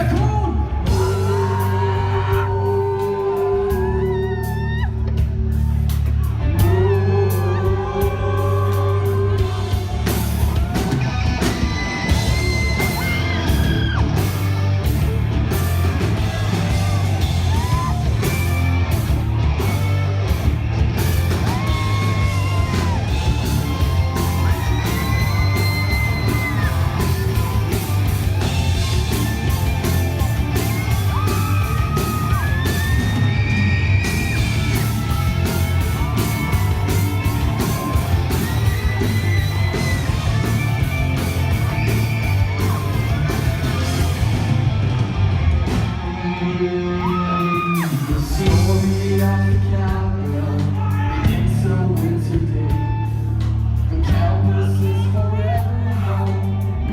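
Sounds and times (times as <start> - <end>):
live rock band playing: 0.0 - 56.9
singer belting yelled notes: 6.5 - 14.2, 21.2 - 44.4
pounding drums: 9.4 - 46.1.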